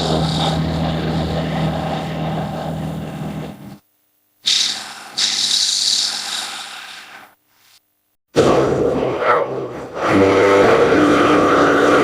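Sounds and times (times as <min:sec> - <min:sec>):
hissing monster roar: 0:08.5 - 0:12.0.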